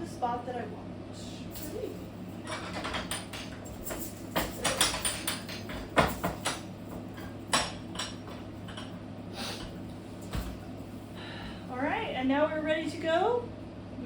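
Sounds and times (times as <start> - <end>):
steady low hum: 0.0 - 14.0
loom parts clacking and knocking: 2.4 - 8.9.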